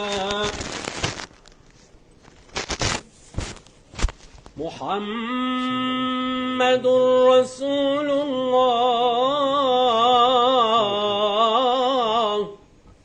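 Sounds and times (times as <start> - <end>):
man chanting recitation: 0.0 - 1.2, 4.6 - 12.6
short rustling: 0.0 - 4.5.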